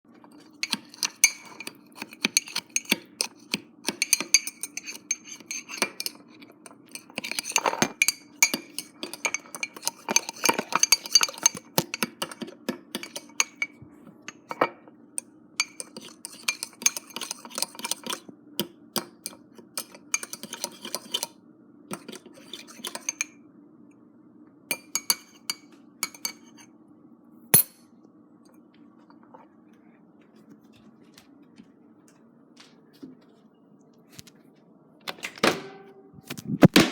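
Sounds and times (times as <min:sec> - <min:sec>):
steady low hum: 0:00.1 - 0:36.9
metal utensil clinking against mug: 0:00.6 - 0:06.3, 0:06.9 - 0:13.7, 0:21.9 - 0:23.3.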